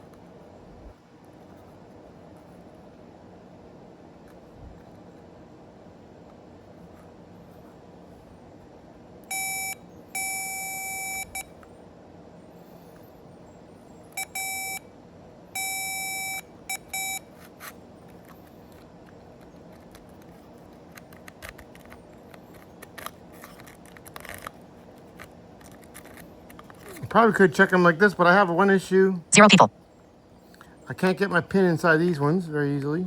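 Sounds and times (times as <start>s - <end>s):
continuity tester beeping: 9.3s - 11.4s, 14.2s - 14.8s, 15.6s - 17.2s.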